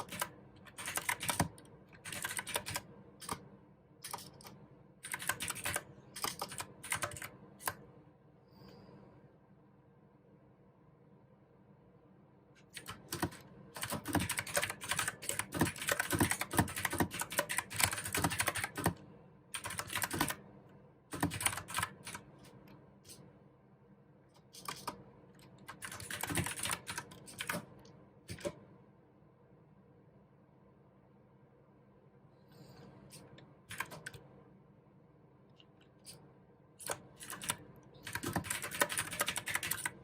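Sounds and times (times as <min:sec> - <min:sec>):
mechanical keyboard typing: 0:00.0 - 0:03.4, 0:04.0 - 0:07.8, 0:12.7 - 0:19.0, 0:19.6 - 0:20.4, 0:21.1 - 0:22.3, 0:24.6 - 0:28.6, 0:33.7 - 0:34.2, 0:36.8 - 0:40.0.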